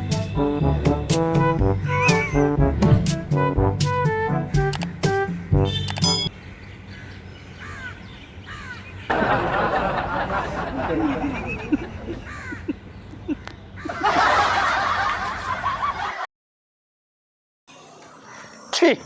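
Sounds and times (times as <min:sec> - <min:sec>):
bird calls: 0:01.8 - 0:02.6, 0:05.7 - 0:09.4, 0:11.0 - 0:14.1
people laughing under their breath: 0:09.1 - 0:16.2.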